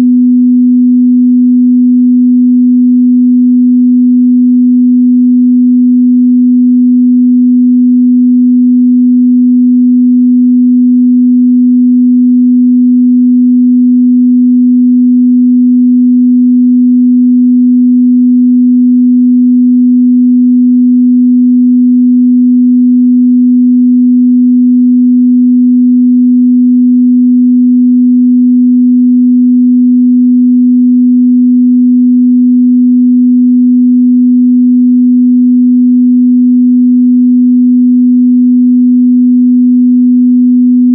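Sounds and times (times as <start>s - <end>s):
sine-wave test tone: 0.0s - 40.9s.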